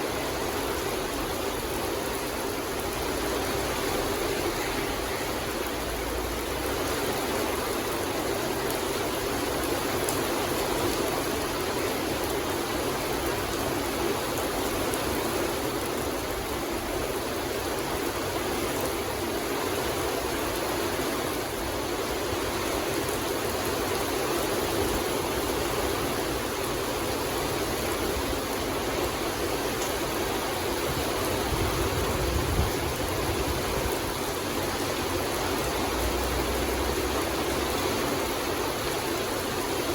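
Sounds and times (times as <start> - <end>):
rain falling in forest: 0.0 - 39.9.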